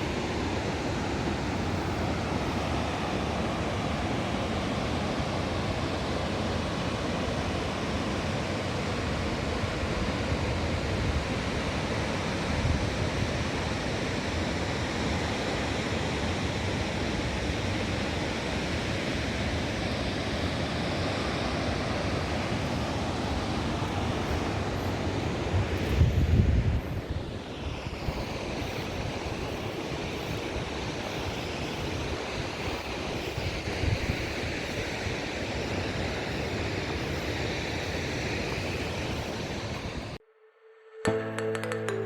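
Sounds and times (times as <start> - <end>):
wind buffeting microphone: 22.3 - 40.2.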